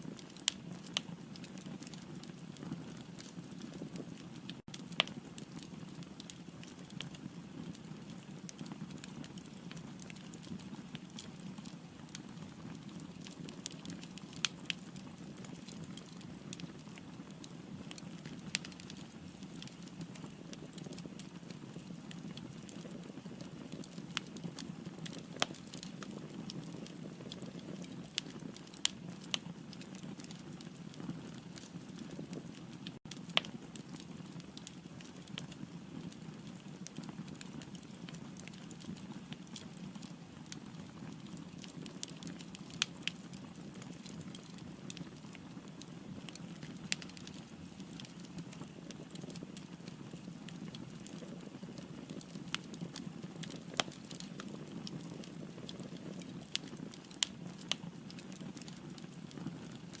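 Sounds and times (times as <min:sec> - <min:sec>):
fire rumbling in fireplace: 0:00.1 - 1:00.0
firewood crackling: 0:00.1 - 1:00.0
sharp pops of burning wood: 0:51.8 - 0:58.7.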